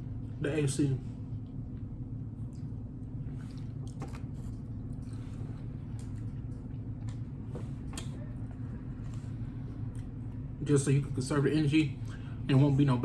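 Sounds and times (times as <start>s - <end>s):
steady low hum: 0.0s - 13.0s
man chewing food: 1.4s - 10.5s.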